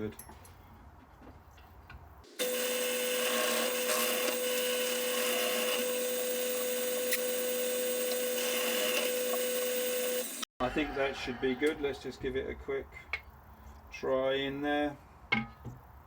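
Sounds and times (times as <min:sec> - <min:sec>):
drill bit hissing through wood: 0:02.4 - 0:10.5
electric drill motor humming: 0:02.4 - 0:10.5.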